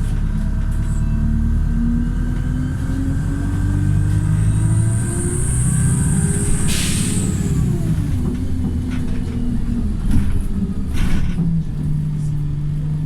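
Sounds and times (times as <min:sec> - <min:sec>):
bus engine slowing to idle: 0:00.0 - 0:13.0
air brake hiss: 0:06.5 - 0:07.4.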